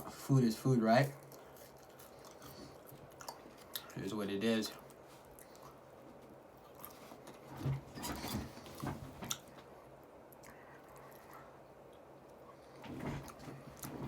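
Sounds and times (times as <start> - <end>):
person chewing food: 1.2 - 4.0, 4.7 - 7.5, 10.2 - 14.0.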